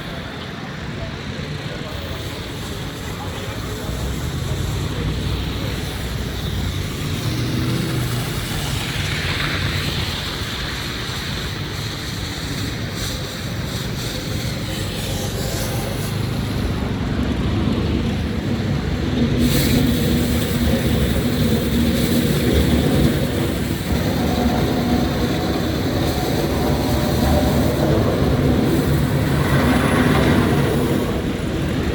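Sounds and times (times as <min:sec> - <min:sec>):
low rumble of city traffic: 0:00.0 - 0:31.9
wind on microphone: 0:16.7 - 0:31.9.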